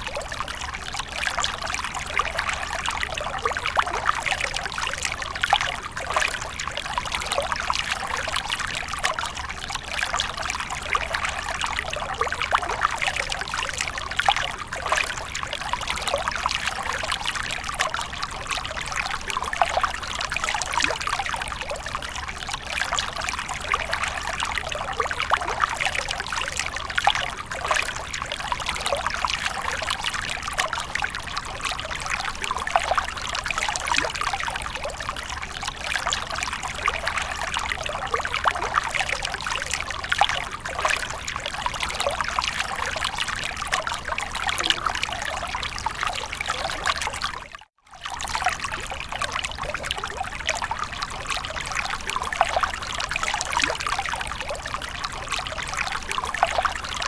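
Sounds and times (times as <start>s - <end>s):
water splashing: 40.6s - 47.4s.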